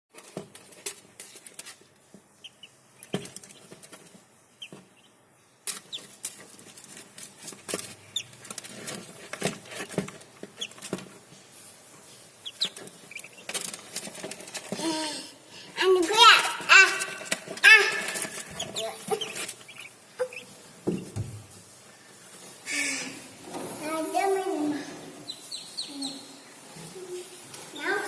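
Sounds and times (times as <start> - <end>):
chicks peeping: 2.3 - 14.7, 16.4 - 22.7, 25.0 - 27.5
trays clicking and scuffling: 5.7 - 11.3, 12.5 - 14.8.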